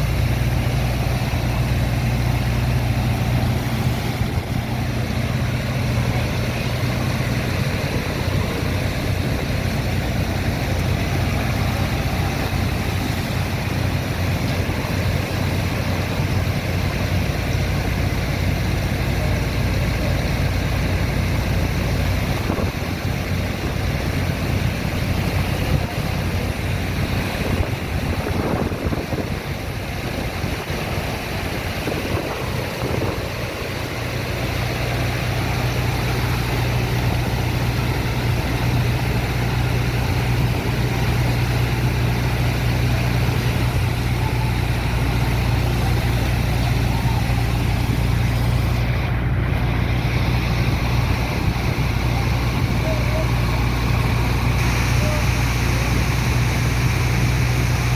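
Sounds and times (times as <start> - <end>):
engine humming: 0.0 - 57.9
rushing water: 0.0 - 57.9
wind on microphone: 22.1 - 35.0, 35.9 - 57.9.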